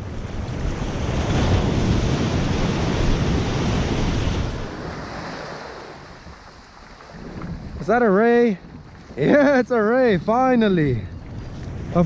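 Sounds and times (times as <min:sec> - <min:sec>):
wave breaking on beach: 0:00.0 - 0:07.9.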